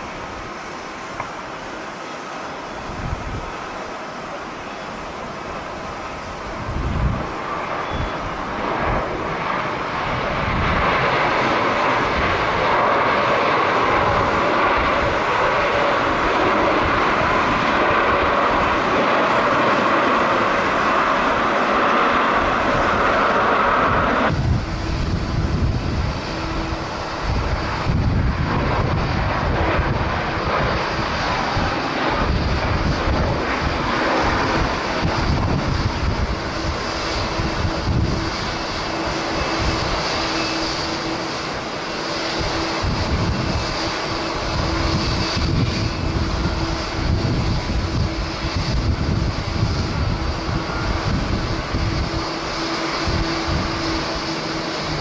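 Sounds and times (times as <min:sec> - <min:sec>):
jet engines roaring: 0:00.0 - 0:55.0
wind buffeting microphone: 0:02.7 - 0:03.8, 0:05.0 - 0:55.0.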